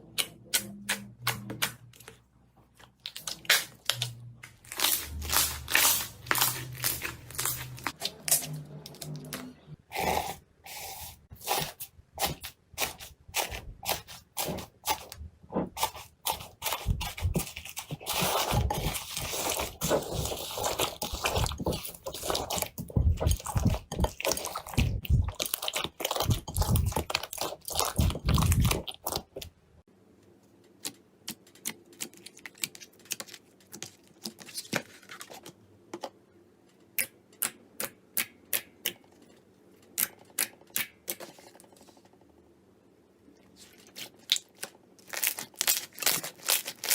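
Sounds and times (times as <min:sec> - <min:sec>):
crunchy slime crackling: 0:02.9 - 0:09.2, 0:15.8 - 0:29.5, 0:43.6 - 0:46.9.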